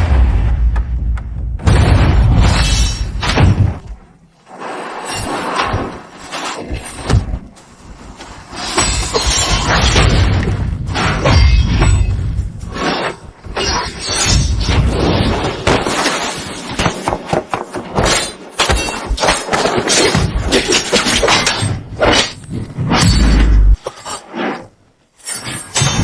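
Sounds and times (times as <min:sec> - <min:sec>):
crashing shattering hits: 0:00.0 - 0:04.0, 0:08.6 - 0:17.2
heavy booming impacts: 0:00.0 - 0:04.2.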